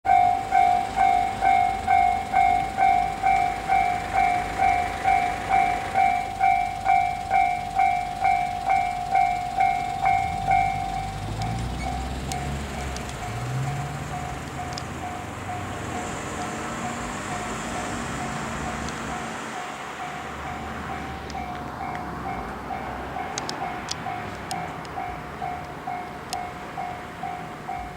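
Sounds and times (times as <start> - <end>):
level crossing alarm ringing: 0.0 - 27.9.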